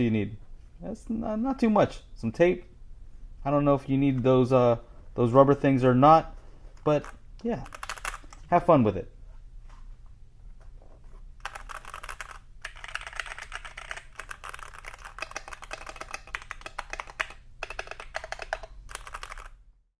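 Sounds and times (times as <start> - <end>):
mechanical keyboard typing: 7.6 - 8.4, 11.4 - 19.6.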